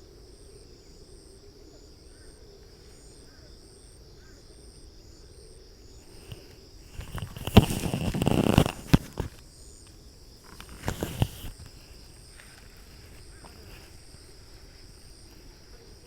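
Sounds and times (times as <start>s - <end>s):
insects trilling: 0.0s - 16.0s
rustling: 6.0s - 16.0s.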